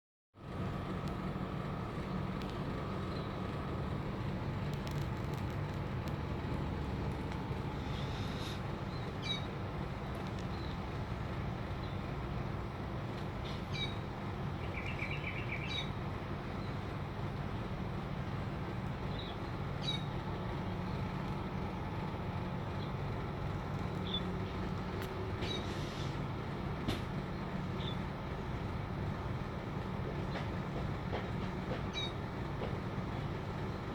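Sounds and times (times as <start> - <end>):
low machine hum: 0.4 - 33.9
bird chirps and trills: 7.8 - 10.8, 13.5 - 16.9, 19.0 - 20.8, 23.8 - 24.6, 25.4 - 26.0, 31.9 - 32.2.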